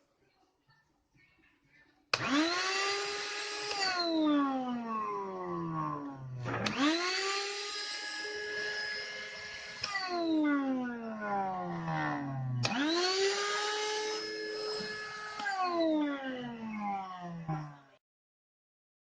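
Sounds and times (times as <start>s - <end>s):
vacuum cleaner motor whining: 2.2s - 17.8s.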